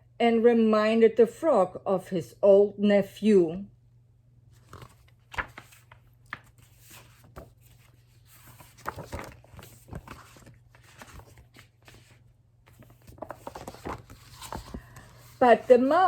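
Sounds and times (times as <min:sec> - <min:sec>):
paper book taps and rustles: 0:04.6 - 0:15.7.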